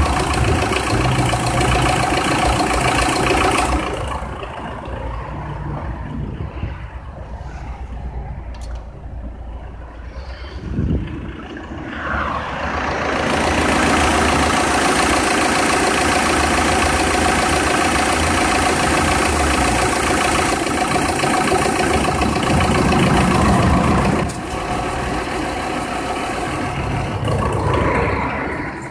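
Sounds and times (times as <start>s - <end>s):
diesel engine running: 0.0s - 28.9s
rush of air: 6.0s - 13.6s, 22.1s - 28.9s.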